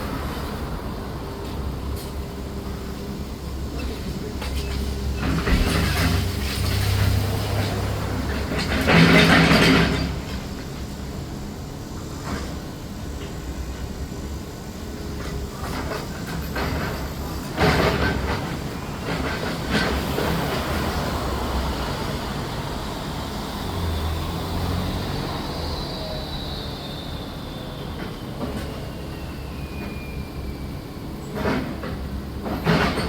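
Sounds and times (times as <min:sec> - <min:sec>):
demolition machinery rumble: 0:00.0 - 0:33.0
high squeal falling in pitch: 0:24.0 - 0:31.0.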